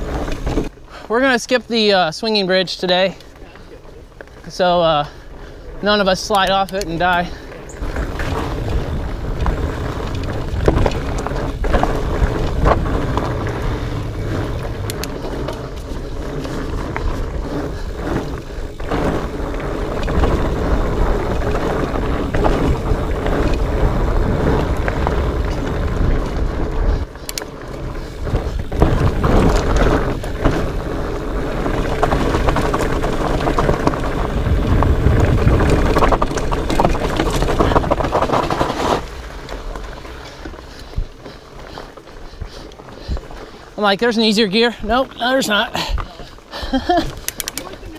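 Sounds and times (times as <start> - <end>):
bike tyre noise: 0.0 - 47.9
bike knocks and rattles: 6.2 - 41.8
wind on microphone: 6.7 - 39.4.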